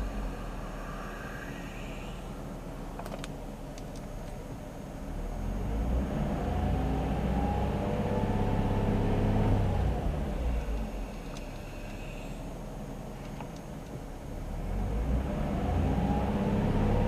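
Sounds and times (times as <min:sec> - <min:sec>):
car engine idling and revving: 0:00.0 - 0:17.0
faint clicks: 0:10.6 - 0:12.1.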